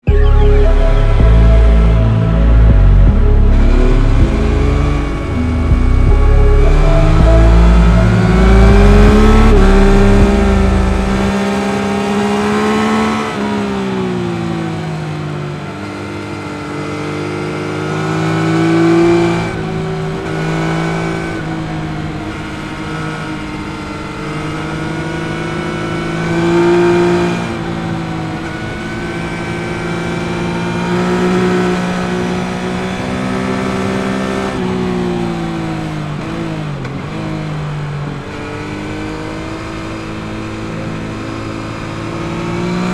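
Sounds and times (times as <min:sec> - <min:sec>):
motorcycle engine revving: 0:01.2 - 0:13.4.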